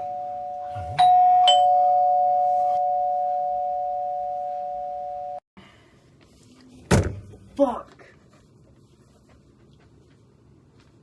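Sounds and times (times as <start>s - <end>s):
two-tone doorbell chime: 0.0s - 5.4s.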